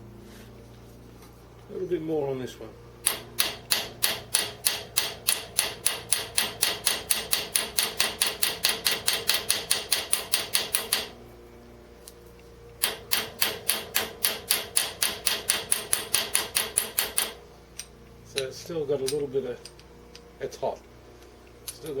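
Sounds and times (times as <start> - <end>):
small hammer tapping nail: 3.0 - 11.1, 12.8 - 17.4.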